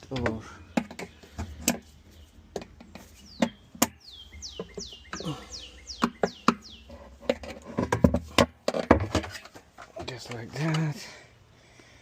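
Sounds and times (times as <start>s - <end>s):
bird chirping: 0.0s - 7.8s
plastic clicks and knocks: 0.2s - 1.8s, 2.5s - 4.0s, 7.2s - 10.8s.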